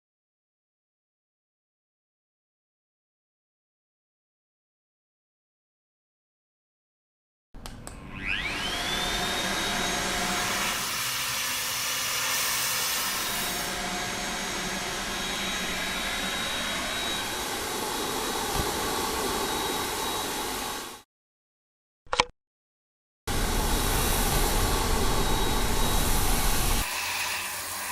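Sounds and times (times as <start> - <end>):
vacuum cleaner motor whine: 7.9 - 21.0, 23.3 - 27.9
short click: 22.1 - 22.3.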